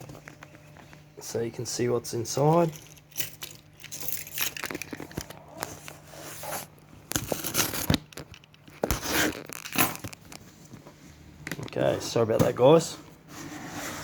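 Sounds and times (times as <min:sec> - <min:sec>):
packaging tearing and crinkling: 0:04.3 - 0:06.0, 0:07.1 - 0:10.4.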